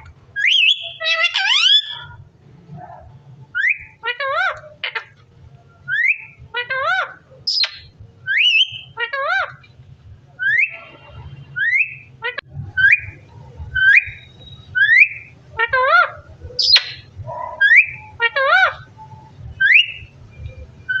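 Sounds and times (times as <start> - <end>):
parrot warbling calls: 0.4 - 2.2, 3.5 - 5.1, 5.9 - 9.6, 10.4 - 11.0, 11.6 - 19.0
parrot whistling: 0.4 - 2.2, 5.9 - 9.4, 10.4 - 10.9, 11.6 - 13.2, 13.8 - 18.9, 19.6 - 20.1.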